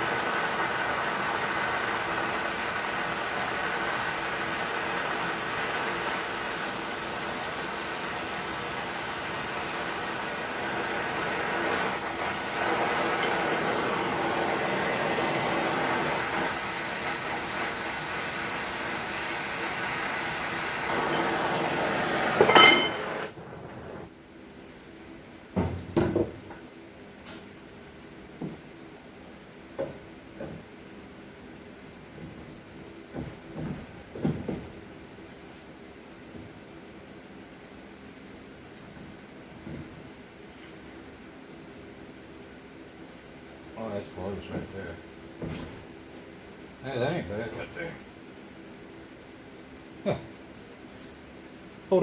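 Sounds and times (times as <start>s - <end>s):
workshop tool hissing: 0.0s - 23.3s
sharp metallic clink: 22.5s - 23.2s.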